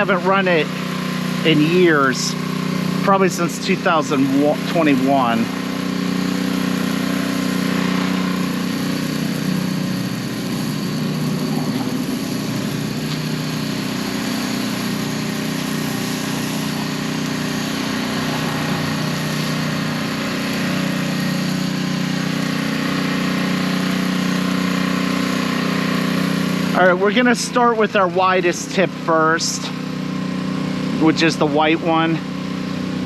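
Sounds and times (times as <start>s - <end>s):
small engine running: 0.0s - 33.0s.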